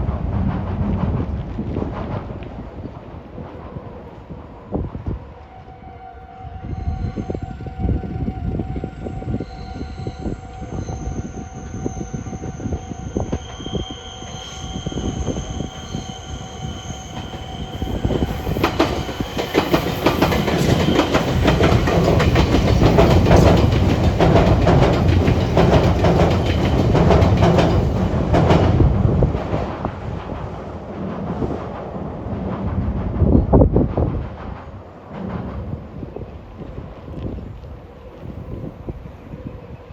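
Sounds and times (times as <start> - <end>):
train whine: 0.0 - 39.9
train wheels clattering over rails: 16.6 - 35.8.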